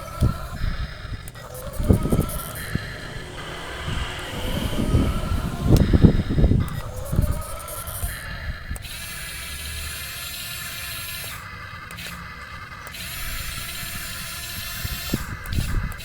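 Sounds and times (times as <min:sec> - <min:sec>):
toy electric motors whirring: 0:08.8 - 0:16.0.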